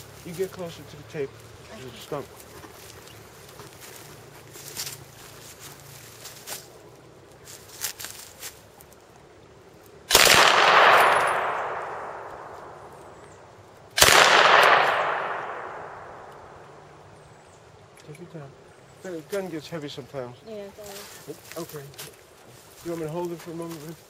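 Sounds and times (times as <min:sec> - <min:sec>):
submachine gun bursts echoing: 0:10.1 - 0:12.8, 0:14.0 - 0:16.3.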